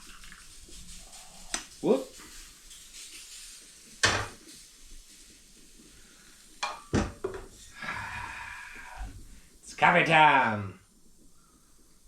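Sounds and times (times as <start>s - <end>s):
metal cookware clanking: 4.0s - 4.4s, 6.6s - 7.5s.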